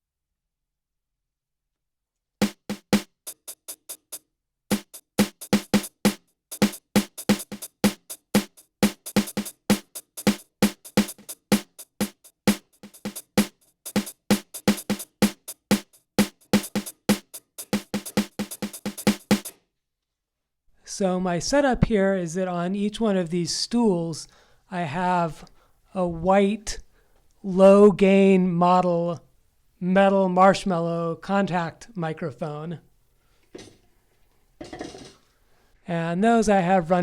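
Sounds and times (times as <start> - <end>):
synthesized drum hits: 2.4 - 19.5.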